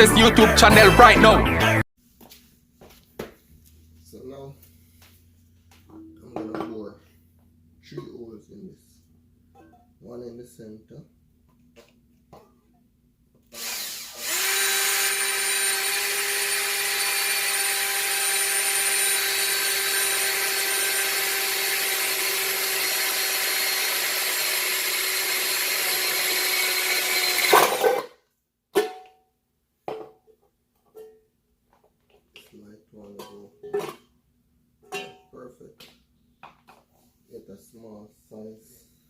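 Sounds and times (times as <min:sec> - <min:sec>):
electric drill boring a hole: 0:13.5 - 0:28.0.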